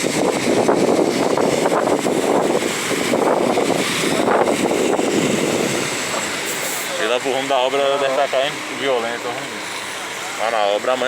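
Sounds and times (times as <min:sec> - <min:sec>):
storm runoff rushing through street: 0:00.0 - 0:11.0.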